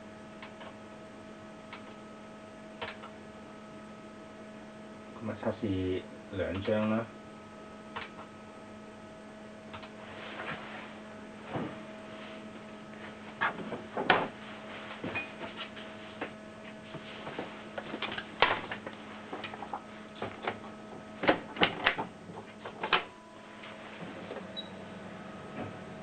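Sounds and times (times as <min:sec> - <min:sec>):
printer mechanism hum: 0:00.0 - 0:26.0
printer clicks and clacks: 0:02.8 - 0:03.2, 0:07.9 - 0:08.3, 0:17.8 - 0:23.1.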